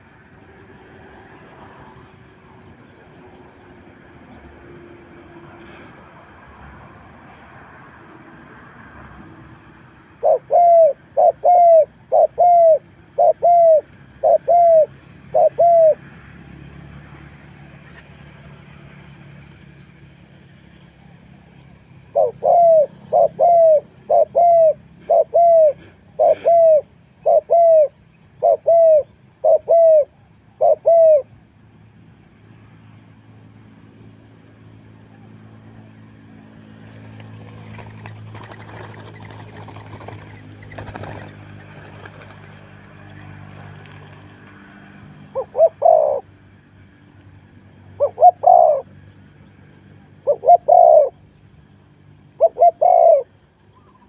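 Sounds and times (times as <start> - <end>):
dove cooing: 10.1 - 16.0, 22.1 - 31.3, 45.3 - 46.3, 48.0 - 49.0, 50.2 - 51.2, 52.4 - 54.0
small birds chirping: 35.8 - 42.4, 48.0 - 54.0.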